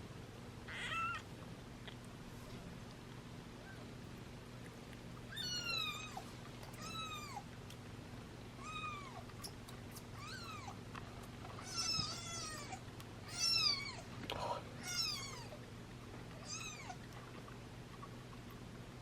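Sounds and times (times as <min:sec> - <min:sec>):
low steady hum: 0:00.0 - 0:19.0
kitten mewing: 0:00.7 - 0:01.3, 0:05.3 - 0:06.2, 0:11.6 - 0:14.1, 0:14.8 - 0:15.6.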